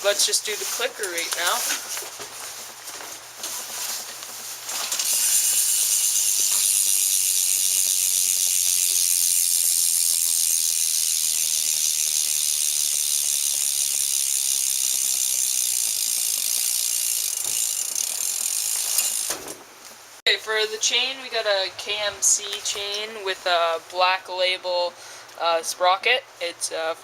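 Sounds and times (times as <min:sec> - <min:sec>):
bicycle freewheel clicking: 0:02.9 - 0:19.6.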